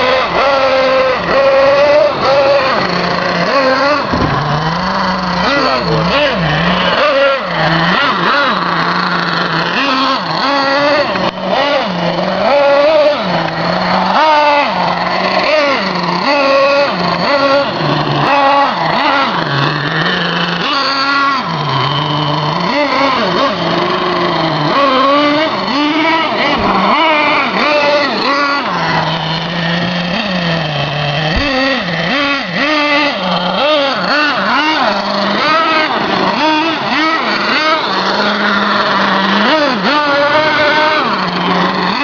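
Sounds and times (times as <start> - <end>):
moped engine revving: 0.0 - 42.0.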